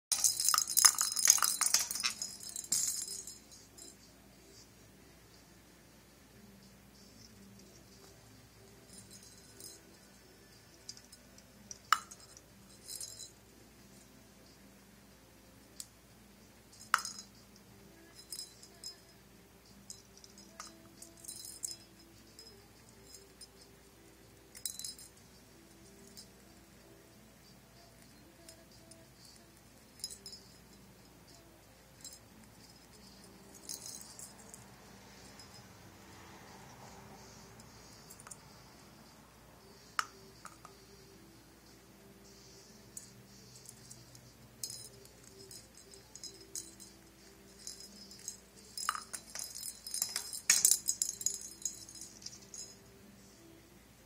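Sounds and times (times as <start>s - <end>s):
parrot toy clinking: 0.1s - 4.1s, 7.2s - 13.4s, 16.7s - 19.2s, 19.8s - 26.5s, 28.0s - 35.7s, 42.8s - 53.0s.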